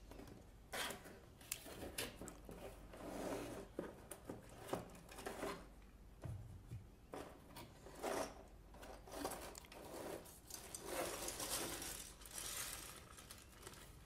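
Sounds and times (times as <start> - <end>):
packaging rustling: 10.4 - 14.0.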